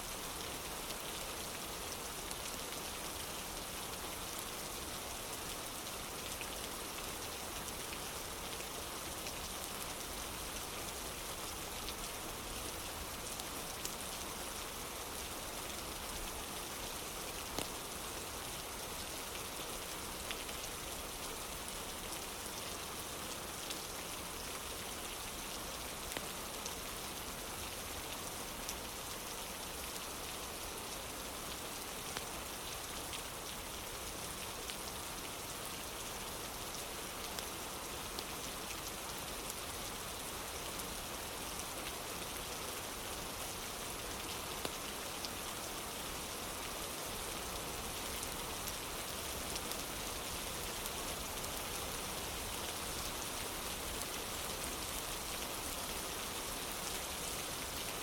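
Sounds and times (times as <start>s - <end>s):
rain on a wooden porch: 0.0s - 58.0s.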